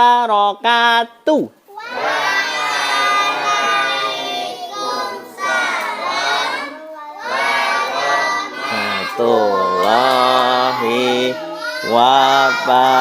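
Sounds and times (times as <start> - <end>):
children chanting together: 1.8 - 13.0.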